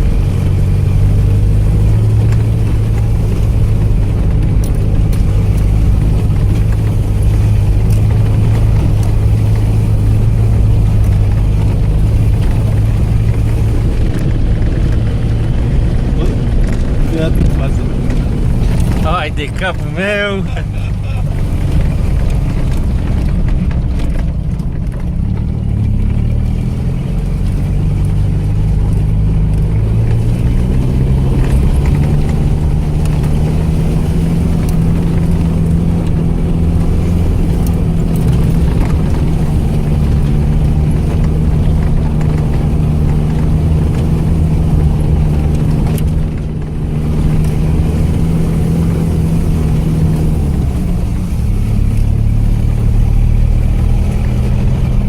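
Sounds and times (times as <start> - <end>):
vehicle engine running under load: 0.0 - 55.0.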